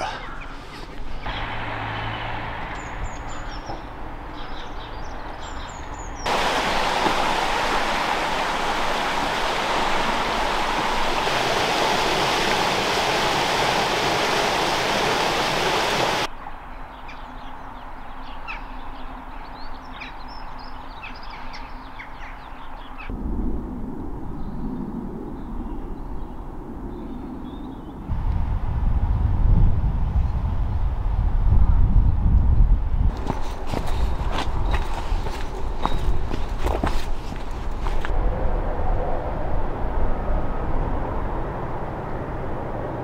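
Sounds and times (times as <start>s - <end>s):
small birds chirping: 0.0s - 6.4s, 33.3s - 37.1s
loud steady rushing noise: 6.3s - 16.3s.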